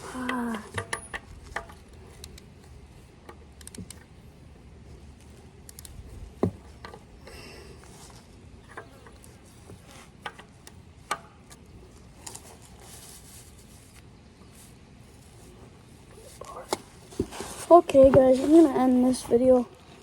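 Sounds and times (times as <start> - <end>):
rustling: 0.0 - 20.0
knocks and clicks of handling: 0.2 - 4.1, 5.2 - 7.2, 7.8 - 12.4.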